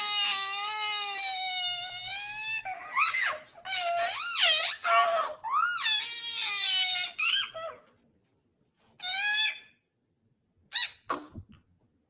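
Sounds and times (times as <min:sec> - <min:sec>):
high-pitched wavering squealing cries: 0:00.0 - 0:07.8.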